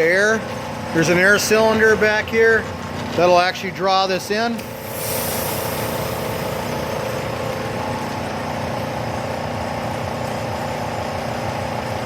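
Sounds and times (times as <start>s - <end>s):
compressed air hissing: 4.6s - 8.6s
machine hum: 4.6s - 12.0s.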